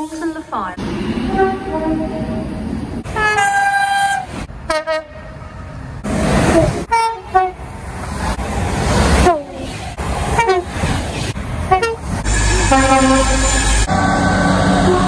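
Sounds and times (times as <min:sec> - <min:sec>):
train noise: 0:00.0 - 0:15.0
train horn blasts: 0:11.7 - 0:15.0.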